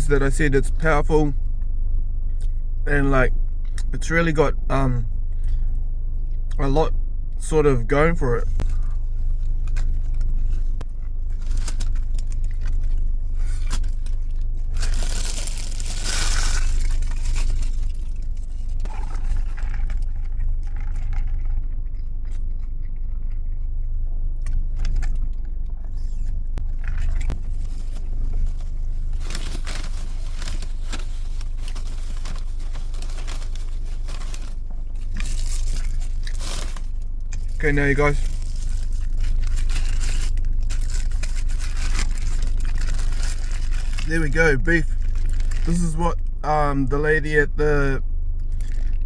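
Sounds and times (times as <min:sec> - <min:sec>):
steady low hum: 0:00.0 - 0:49.0
paper wrappers crinkling: 0:08.6 - 0:20.9, 0:26.7 - 0:46.0.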